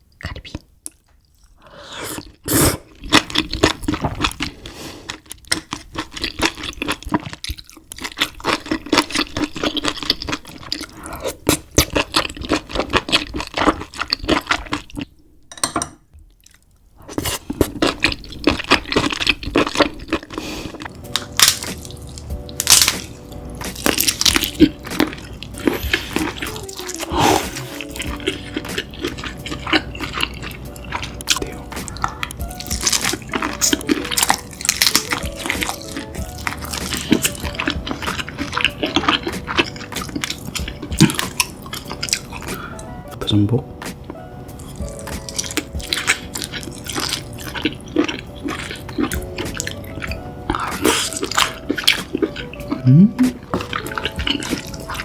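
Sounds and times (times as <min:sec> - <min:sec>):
seafood being cracked and chewed: 0:02.2 - 0:15.2, 0:16.2 - 0:43.0, 0:43.8 - 0:55.0
background music with held tones: 0:17.2 - 0:55.0.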